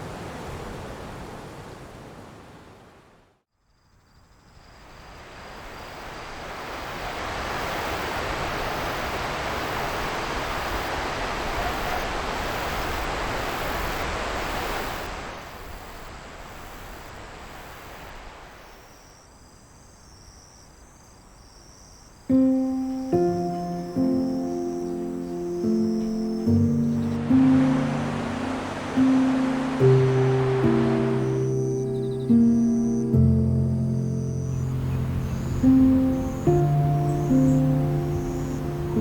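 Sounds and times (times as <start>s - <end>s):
insect trilling: 15.6s - 39.0s
music: 22.3s - 39.0s.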